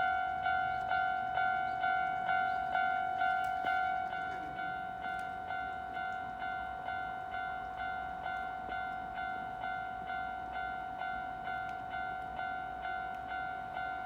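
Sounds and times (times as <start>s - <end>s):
level-crossing alarm bell: 0.0s - 14.0s.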